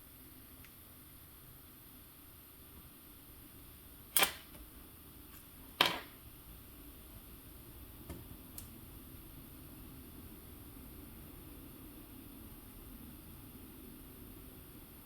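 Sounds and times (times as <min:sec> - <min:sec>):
sharp clacks of small tools: 0:04.2 - 0:04.6.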